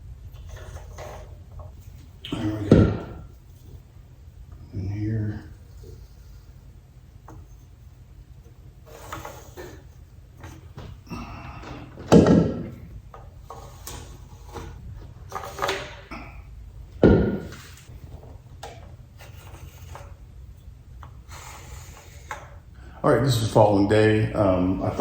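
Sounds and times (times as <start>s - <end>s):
wooden pieces knocking on wood: 2.6s - 3.2s, 11.6s - 13.2s, 17.0s - 18.8s
wooden clatter and rubbing: 17.0s - 20.2s.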